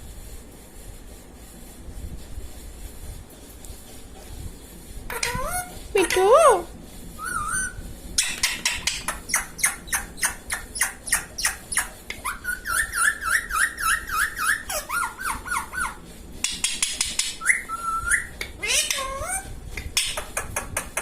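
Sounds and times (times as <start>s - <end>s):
parrot chirping: 5.1s - 19.4s.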